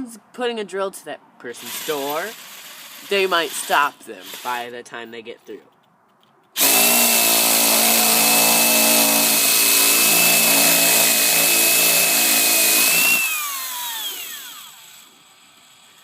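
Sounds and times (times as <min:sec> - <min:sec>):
electric drill boring into lock: 0:01.6 - 0:04.6, 0:06.6 - 0:16.0.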